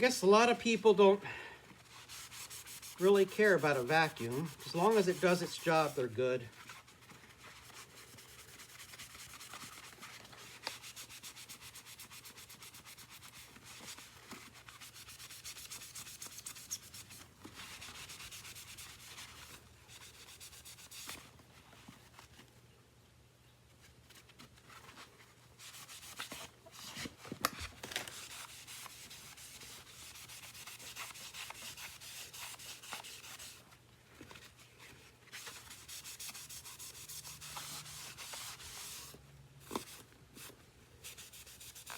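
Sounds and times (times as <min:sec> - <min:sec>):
hand scrubbing plastic housing: 0:02.4 - 0:06.0.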